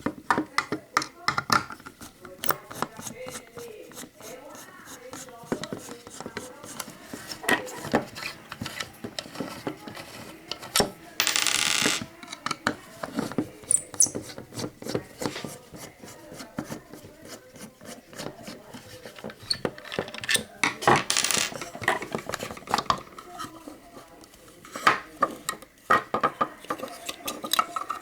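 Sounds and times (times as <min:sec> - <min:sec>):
plastic parts clicking and rattling: 0:18.2 - 0:23.2.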